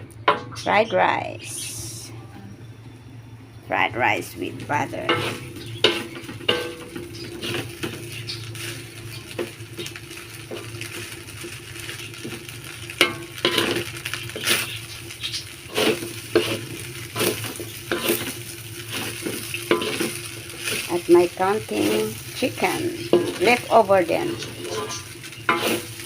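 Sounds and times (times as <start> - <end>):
steady low hum: 0.0 - 26.0
rice sizzling in a pan: 3.9 - 26.0
utensil scraping and knocking pan: 21.8 - 26.0.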